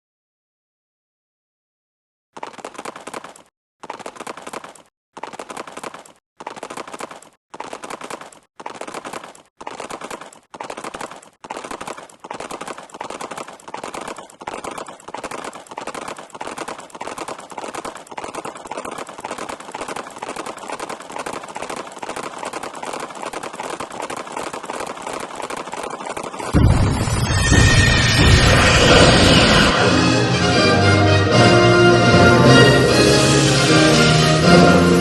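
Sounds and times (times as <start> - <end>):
rapid clattering clicks: 2.4 - 26.6.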